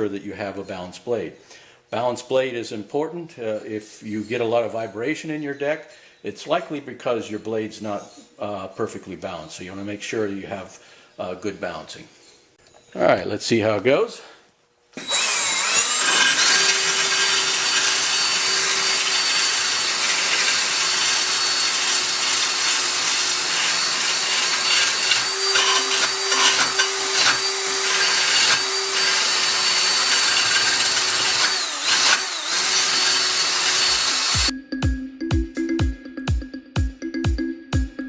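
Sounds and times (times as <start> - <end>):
electric drill whining: 15.0 - 34.5
grinding on steel blade: 15.0 - 34.5
music with steady beat: 34.5 - 38.0.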